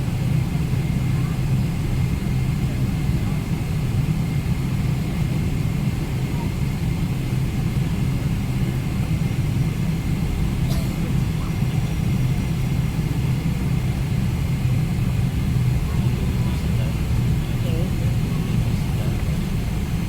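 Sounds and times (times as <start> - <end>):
aircraft cabin rumble: 0.0 - 20.0.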